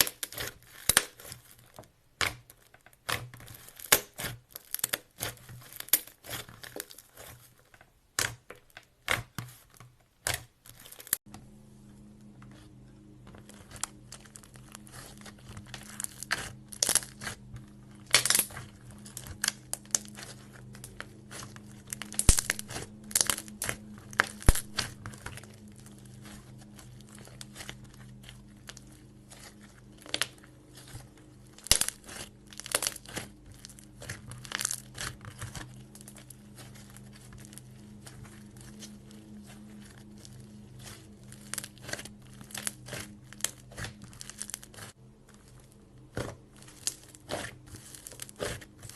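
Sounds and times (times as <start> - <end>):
low steady hum: 10.8 - 48.9
slime squished by hand crackling: 18.0 - 45.5, 46.1 - 48.9.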